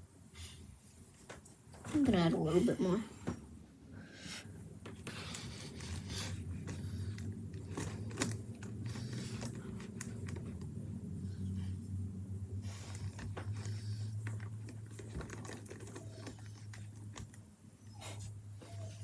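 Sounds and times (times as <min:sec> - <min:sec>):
steady low hum: 0:01.8 - 0:14.6.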